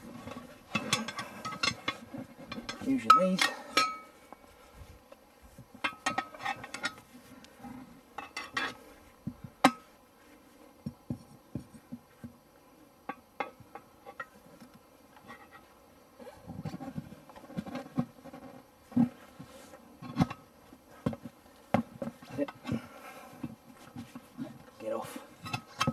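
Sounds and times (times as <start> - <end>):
metal clank: 0.2 - 4.1.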